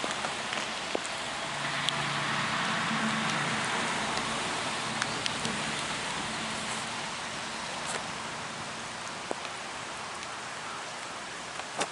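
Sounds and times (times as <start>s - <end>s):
steady rain falling: 0.0s - 11.9s.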